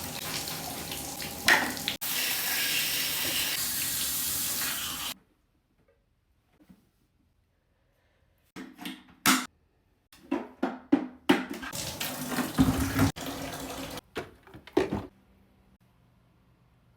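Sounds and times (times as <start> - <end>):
tap water splashing in sink: 0.0 - 2.0, 11.6 - 14.0.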